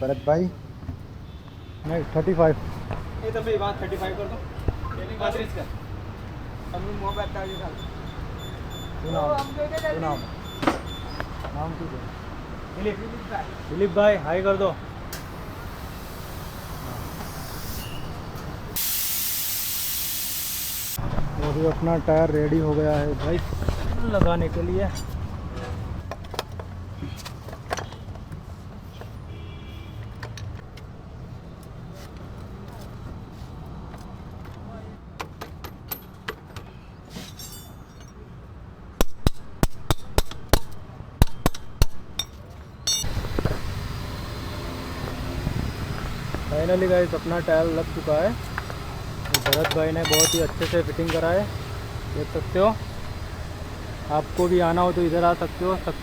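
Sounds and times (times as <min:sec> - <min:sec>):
compressed air hissing into tyre: 0:15.2 - 0:21.0
metal tool striking metal: 0:42.2 - 0:43.1, 0:49.4 - 0:50.8.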